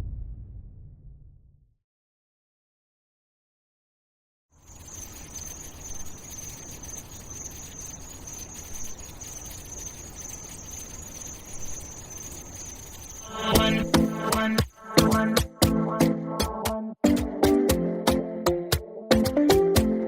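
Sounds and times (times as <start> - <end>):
crickets chirring: 4.6 - 15.3.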